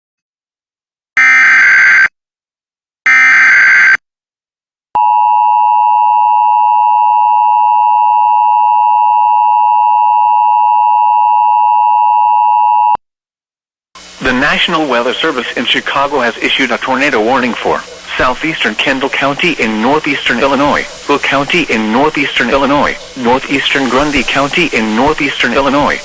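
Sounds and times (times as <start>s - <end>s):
screechy digital header bursts: 14.2s - 26.0s.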